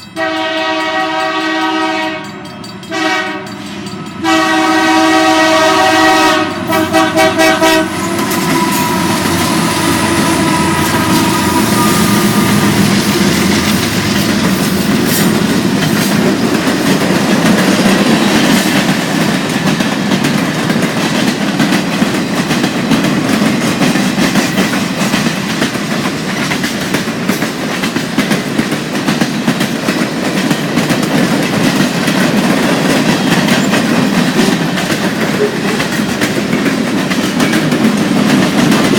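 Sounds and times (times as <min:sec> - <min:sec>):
freight train rumbling past: 0:00.0 - 0:38.9
diesel locomotive horn chord: 0:00.1 - 0:12.9
wheels clacking over rail joints: 0:03.5 - 0:38.9.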